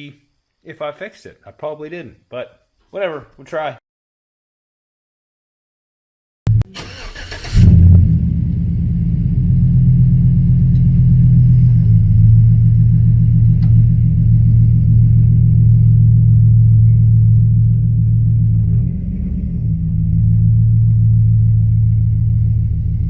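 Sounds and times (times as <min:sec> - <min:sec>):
car engine starting and idling: 0:06.5 - 0:23.0.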